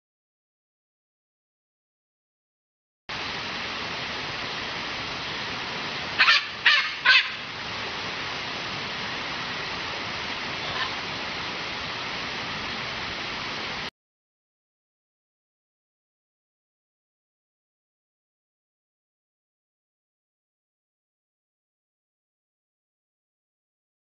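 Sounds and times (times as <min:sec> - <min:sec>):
steady hiss: 0:03.1 - 0:13.9
parrot squawking: 0:06.2 - 0:07.4.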